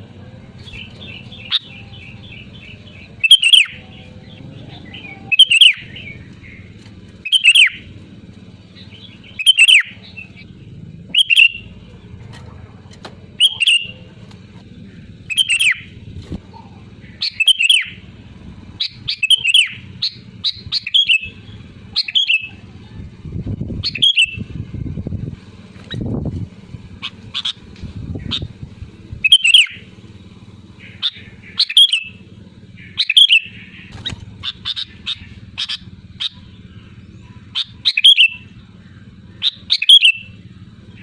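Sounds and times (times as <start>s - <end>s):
bird calling: 0.0s - 12.1s, 13.2s - 23.0s, 23.8s - 24.5s, 26.8s - 41.0s
low rumble: 19.9s - 31.5s.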